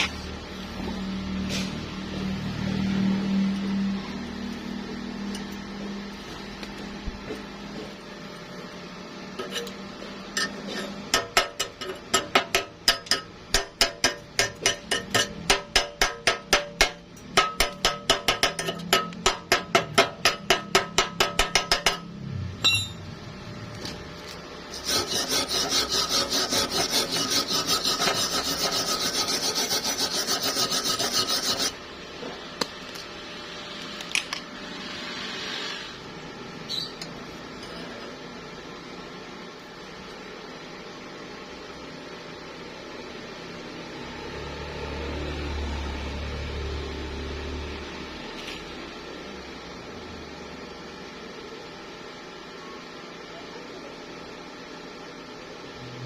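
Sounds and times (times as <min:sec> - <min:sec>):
rhythmic scraping on metal: 0:10.4 - 0:22.1, 0:24.7 - 0:31.8.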